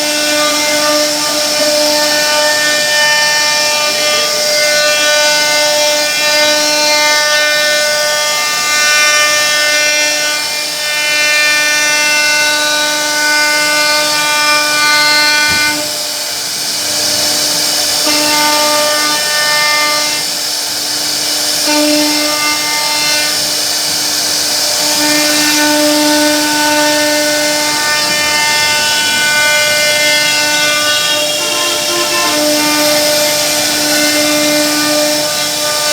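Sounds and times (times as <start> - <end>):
router spindle whine: 0.0 - 35.9
bit carving wood: 24.1 - 35.9.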